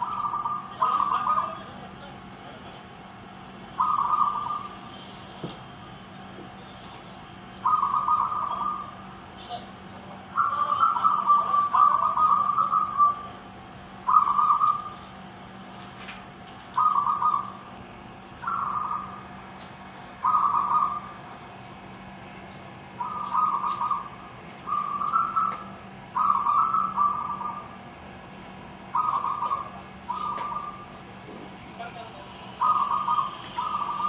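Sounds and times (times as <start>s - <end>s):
doves cooing: 0.0s - 1.7s, 3.8s - 5.0s, 7.6s - 15.3s, 16.7s - 19.6s, 20.2s - 22.2s, 22.8s - 31.2s, 32.4s - 34.0s.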